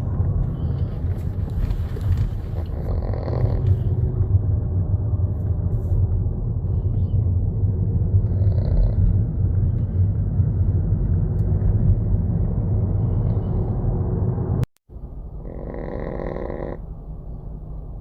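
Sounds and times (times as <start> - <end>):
wind rumble on microphone: 0.0 - 15.4
small dog snoring: 2.6 - 3.9, 8.2 - 9.2, 15.4 - 16.8.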